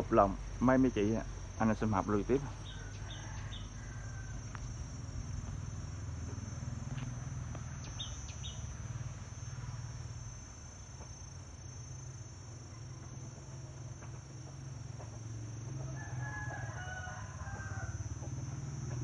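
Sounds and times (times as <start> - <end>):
insect trilling: 0.0 - 19.0
low steady rumble: 3.6 - 15.8.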